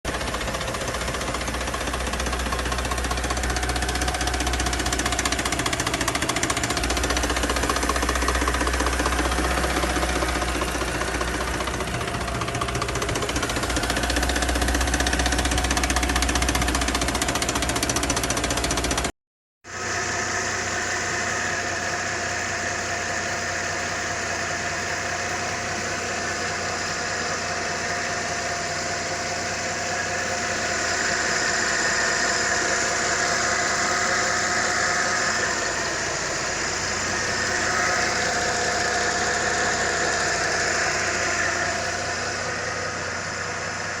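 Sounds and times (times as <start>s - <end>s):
car engine idling with fast ticking: 0.1s - 19.1s, 19.7s - 44.0s.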